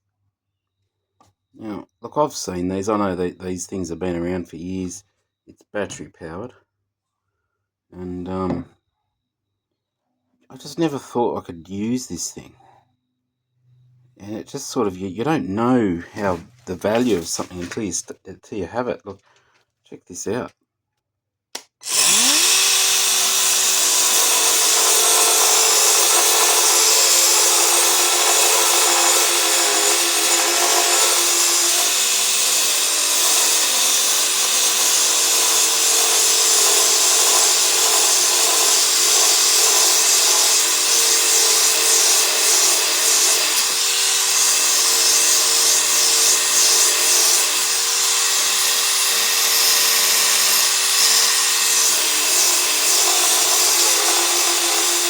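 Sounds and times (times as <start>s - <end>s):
sander motor whine: 21.8s - 41.3s
belt sander grinding metal: 21.8s - 55.0s.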